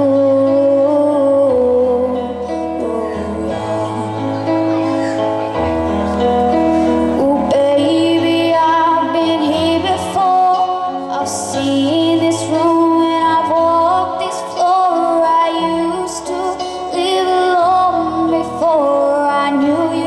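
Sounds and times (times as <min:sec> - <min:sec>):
woman singing: 0:00.0 - 0:05.2, 0:07.1 - 0:20.0
instrumental accompaniment: 0:00.0 - 0:20.0.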